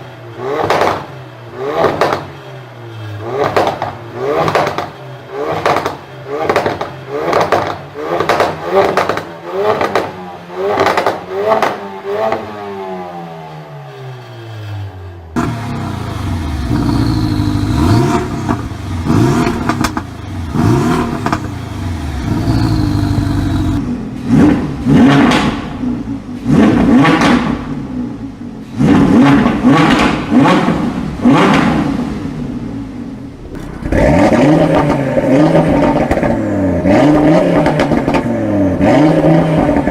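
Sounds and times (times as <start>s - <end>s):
car engines revving: 0.0s - 39.9s
exhaust crackles and pops: 15.4s - 23.8s, 33.4s - 36.4s.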